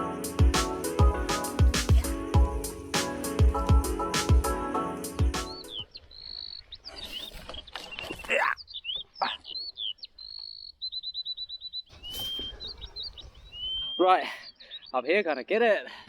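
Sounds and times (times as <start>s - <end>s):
bird trill: 5.0s - 15.1s
birds whistling: 5.4s - 15.0s.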